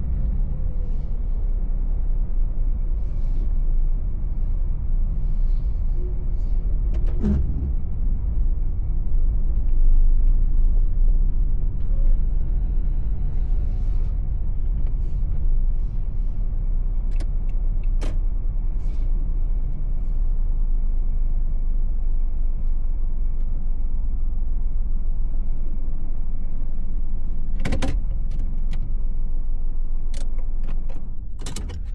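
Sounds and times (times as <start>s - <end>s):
car engine and tyres rumbling: 0.0s - 31.9s.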